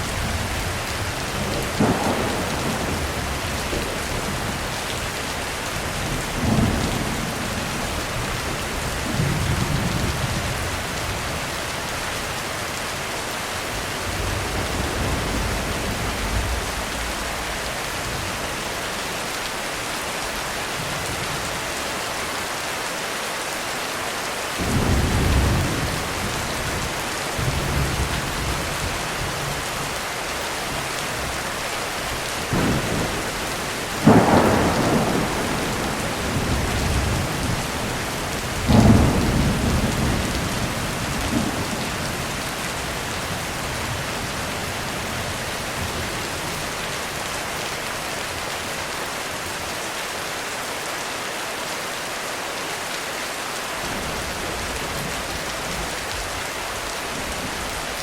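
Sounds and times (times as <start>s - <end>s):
heavy rain on a roof: 0.0s - 58.0s
thunder rumbling: 0.1s - 11.3s, 13.7s - 18.8s, 30.6s - 46.6s
thunder cracks: 1.4s - 4.6s, 32.5s - 41.8s.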